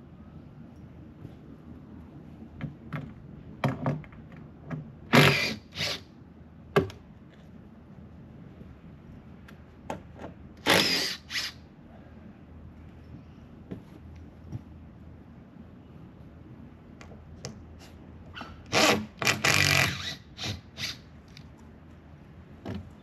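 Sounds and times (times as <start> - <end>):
power drill bursts: 5.1 - 6.0, 10.6 - 11.6, 18.7 - 21.0.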